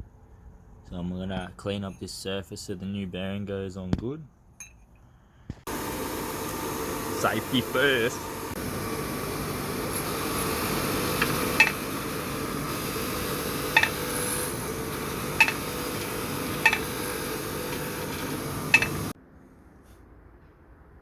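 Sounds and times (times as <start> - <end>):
workshop hum: 5.5 - 19.2.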